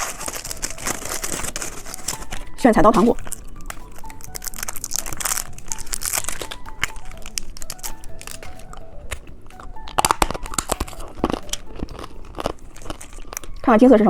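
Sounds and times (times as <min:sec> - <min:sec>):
plastic packaging crinkling and tearing: 0:00.0 - 0:13.7
faint background music: 0:00.0 - 0:14.0
sharp clicks and snaps: 0:03.2 - 0:13.6.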